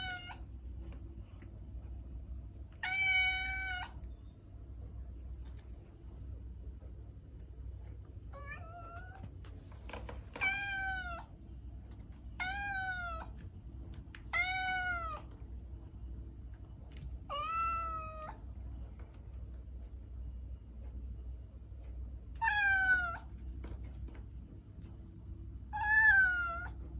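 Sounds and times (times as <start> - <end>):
cat meowing: 0.0 - 0.4, 2.8 - 4.0, 8.3 - 9.2, 10.4 - 11.3, 12.4 - 13.4, 14.3 - 15.3, 17.3 - 18.4, 22.4 - 23.3, 25.7 - 26.8
low steady hum: 0.0 - 26.9.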